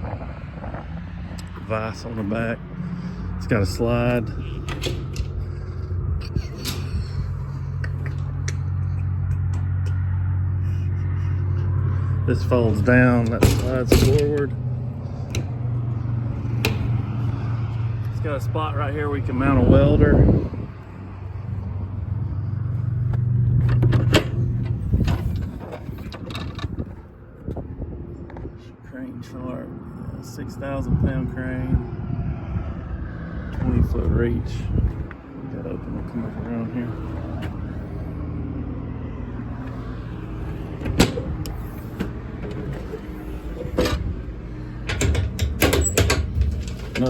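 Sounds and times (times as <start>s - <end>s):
vehicle engine hum: 0.0s - 47.0s
metallic clicks and rattles: 4.4s - 10.0s, 40.8s - 47.0s.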